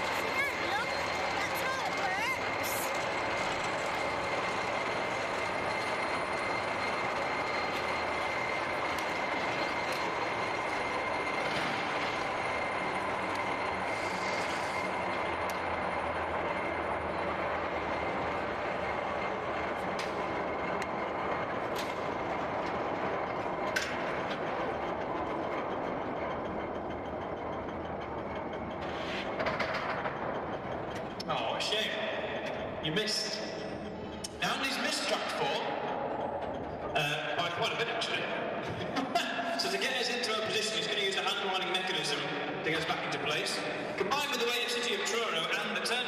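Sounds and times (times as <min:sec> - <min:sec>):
turntable motor rumble: 0:00.0 - 0:31.2.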